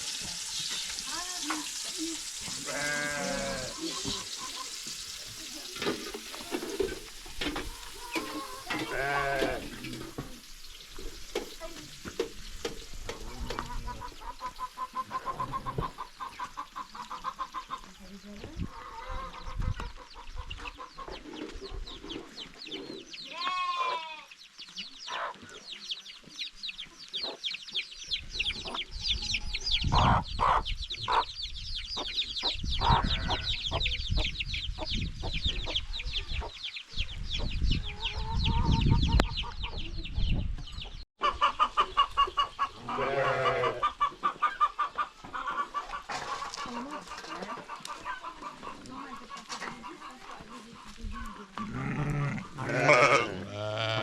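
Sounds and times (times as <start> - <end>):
chickens clucking: 0.0 - 23.9, 24.7 - 53.5.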